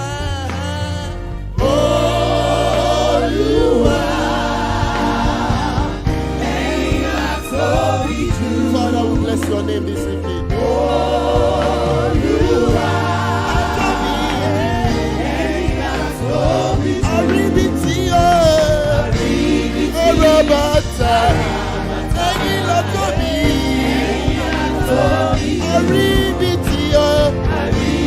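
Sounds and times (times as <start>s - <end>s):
instrumental accompaniment: 0.0s - 28.0s
choir singing: 1.5s - 28.0s.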